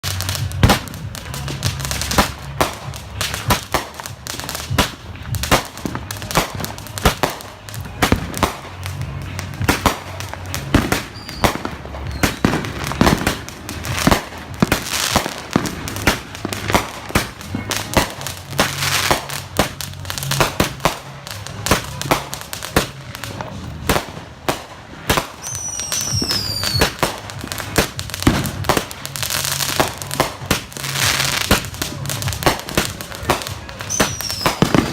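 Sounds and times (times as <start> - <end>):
firecrackers banging and crackling: 0.0 - 34.9
falling firework whistle: 11.0 - 12.6, 25.2 - 27.0, 33.8 - 34.9.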